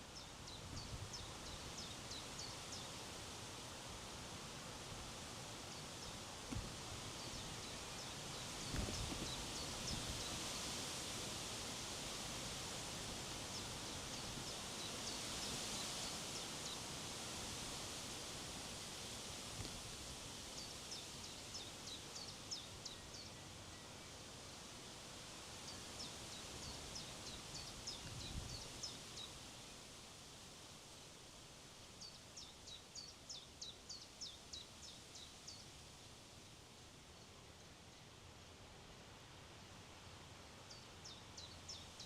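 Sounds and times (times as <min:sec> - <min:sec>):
low wind thump: 0:06.5 - 0:06.8
wind rushing over microphone: 0:08.6 - 0:10.4.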